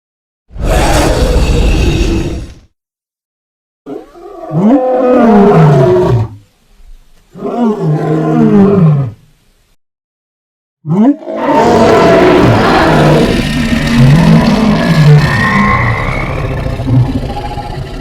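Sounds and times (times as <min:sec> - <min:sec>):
monster roars sliding down: 0:00.6 - 0:02.6.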